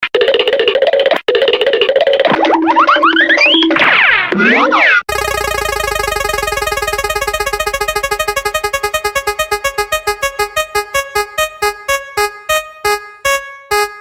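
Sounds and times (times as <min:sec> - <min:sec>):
plinking electronic keyboard notes: 0:05.1 - 0:14.0.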